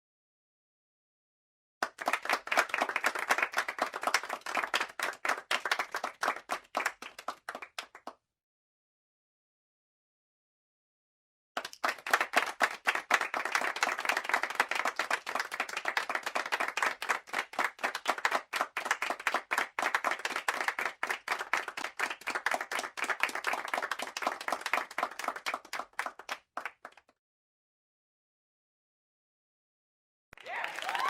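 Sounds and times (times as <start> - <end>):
group of people clapping: 1.8 - 8.2, 11.6 - 27.2, 30.3 - 31.0.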